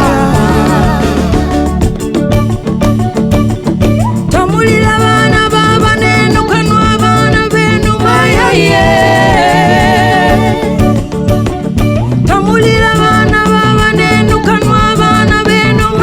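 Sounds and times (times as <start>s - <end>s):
person singing long notes: 0.0s - 2.0s
band music with bass line: 0.0s - 16.0s.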